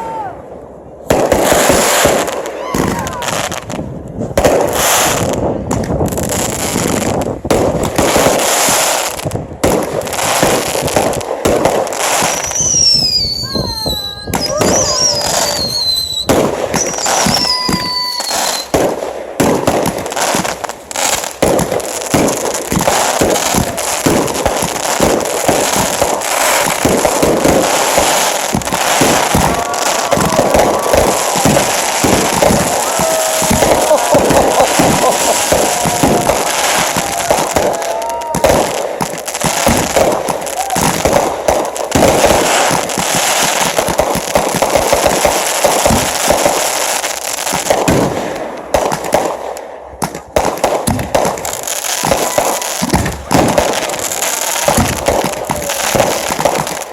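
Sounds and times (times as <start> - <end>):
fireworks bangs and crackling: 0.0 - 56.9
falling firework whistles: 12.1 - 18.9, 25.5 - 38.8.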